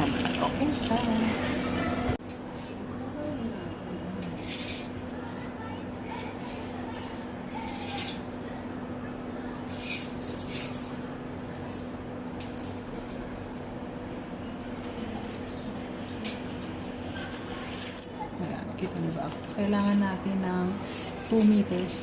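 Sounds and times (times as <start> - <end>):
steady low hum: 0.0 - 22.0
rustles and scrapes of handling: 2.3 - 13.9, 14.8 - 22.0.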